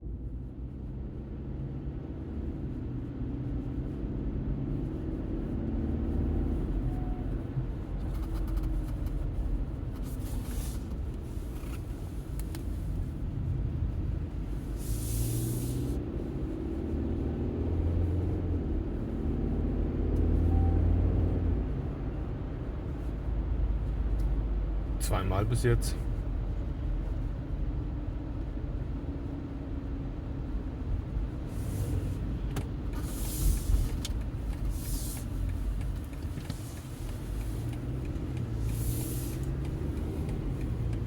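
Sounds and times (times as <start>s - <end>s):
car engine accelerating: 13.3s - 26.0s, 29.8s - 41.0s.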